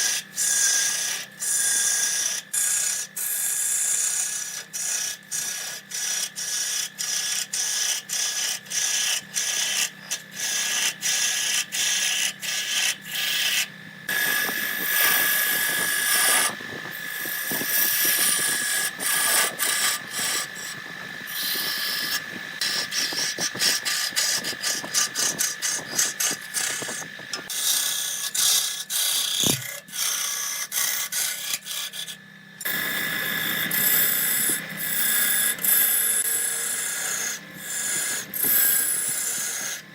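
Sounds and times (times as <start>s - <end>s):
turning tool scraping wood: 0.0s - 39.9s
wood lathe whining: 0.0s - 39.9s.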